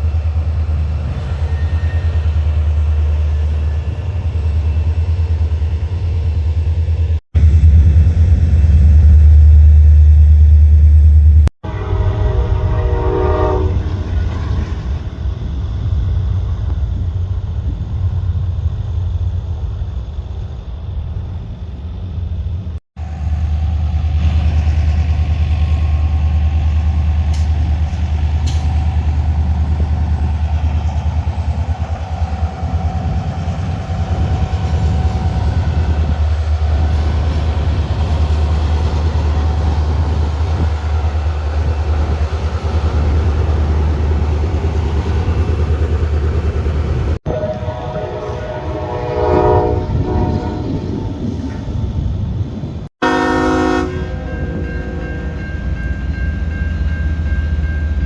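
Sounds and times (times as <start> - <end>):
rumble of passing train: 0.0 - 58.0
train horn: 11.6 - 14.9, 47.2 - 51.0, 53.0 - 55.5.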